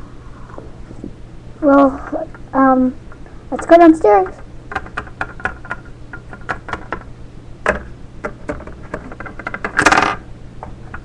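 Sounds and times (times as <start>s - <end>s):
plastic toys clicking on surface: 4.7s - 7.0s.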